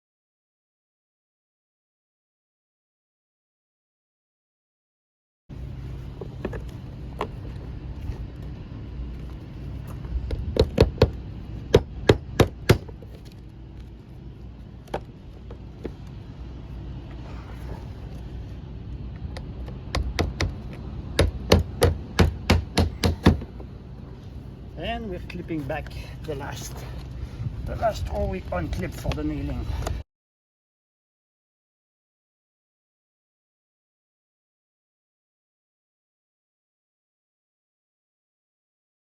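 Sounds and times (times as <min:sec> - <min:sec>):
steady low rumble: 0:05.5 - 0:30.0
hammer driving nails: 0:21.2 - 0:23.5.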